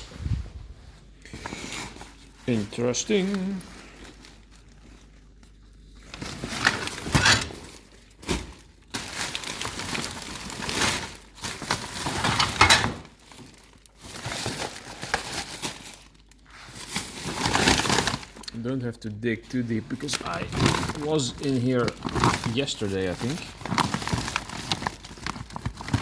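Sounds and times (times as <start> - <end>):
plastic bags crinkling: 0.0 - 26.0
loose rubbish shifting: 19.4 - 26.0.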